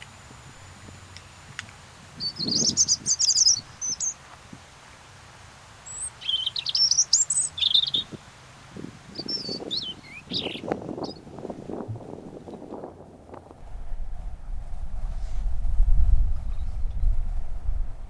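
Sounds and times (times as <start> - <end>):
robin singing: 0.0 - 4.2, 5.8 - 11.3.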